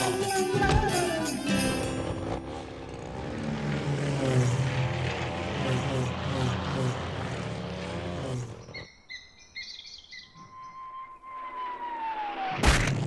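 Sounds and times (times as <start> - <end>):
downward sliding whistle: 10.4 - 12.6.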